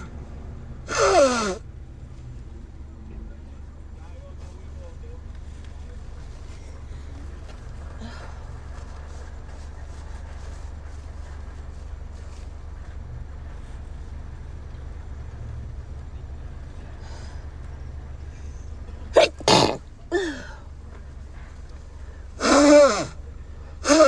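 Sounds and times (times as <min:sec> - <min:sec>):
person sneezing: 0:00.9 - 0:01.6, 0:19.2 - 0:20.6, 0:22.4 - 0:23.2.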